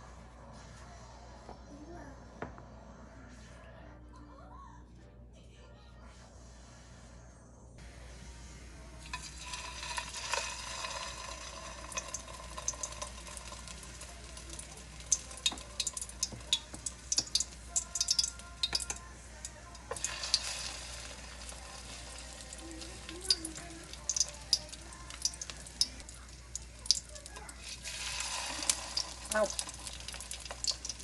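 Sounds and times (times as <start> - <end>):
food sizzling in a frying pan: 9.0 - 31.0
utensil tapping a pan: 9.9 - 19.0.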